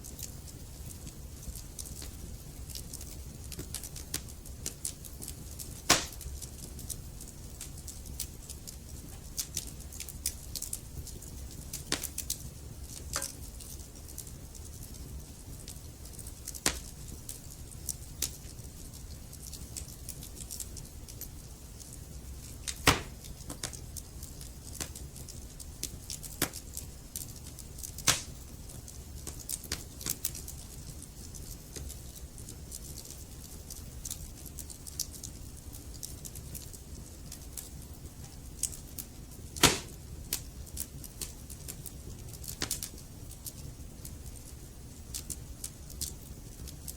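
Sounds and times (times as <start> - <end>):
wood fire crackling and popping: 0.0 - 46.9.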